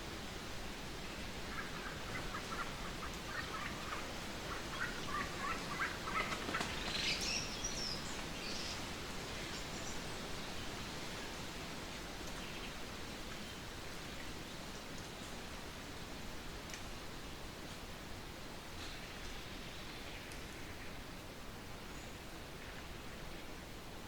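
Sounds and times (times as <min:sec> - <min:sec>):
bird calling: 0:01.5 - 0:07.3.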